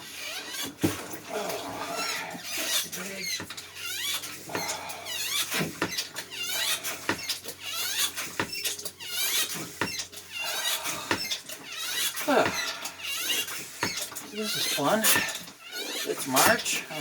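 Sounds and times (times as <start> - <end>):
hand pump squeaking: 0.0 - 17.0
wet sucking of water: 4.0 - 7.1.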